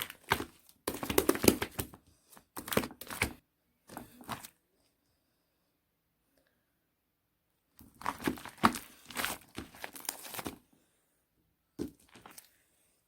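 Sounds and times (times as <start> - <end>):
crinkling and rustling handling: 0.0 - 4.9, 7.8 - 10.8, 11.8 - 12.8.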